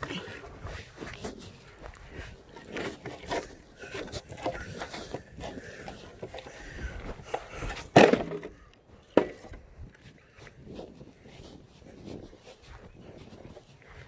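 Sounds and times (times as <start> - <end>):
wooden boards knocking and clattering: 7.9 - 9.6.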